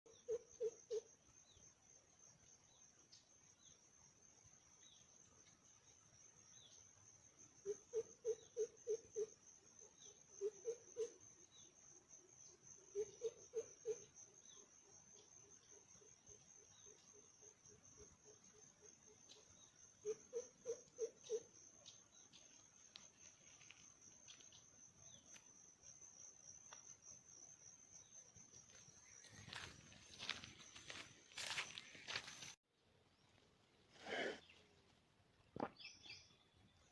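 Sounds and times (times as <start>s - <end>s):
faint chirps and ticks: 0.1s - 33.8s
high insect drone: 0.2s - 32.6s
small bird chirps: 35.6s - 36.9s.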